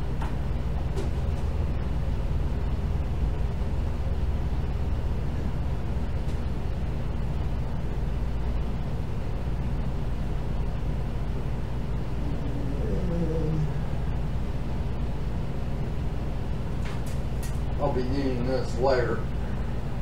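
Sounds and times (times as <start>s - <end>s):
steady low rumble: 0.0s - 20.0s.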